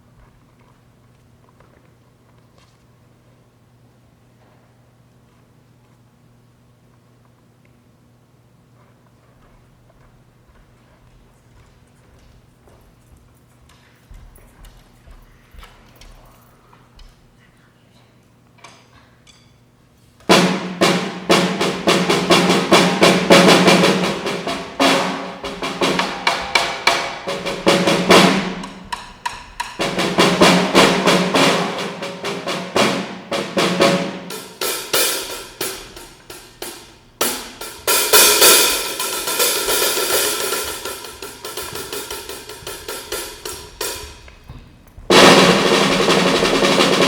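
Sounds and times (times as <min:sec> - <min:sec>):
cymbals washing: 0:20.3 - 0:44.3
drum kit fast rolls: 0:20.3 - 0:47.0.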